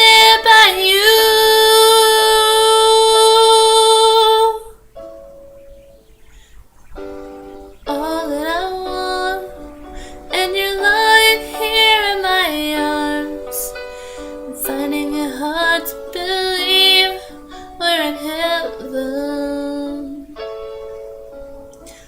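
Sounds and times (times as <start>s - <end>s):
woman singing pop ballad: 0.0s - 4.8s, 7.9s - 20.5s.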